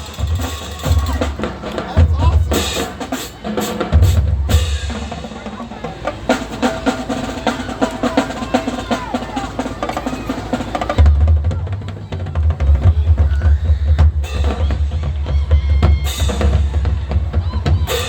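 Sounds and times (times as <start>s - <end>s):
bass drums pounding: 0.0s - 3.0s, 10.9s - 18.0s
snare drum rolls: 0.0s - 18.0s
tenor drums: 0.0s - 18.0s.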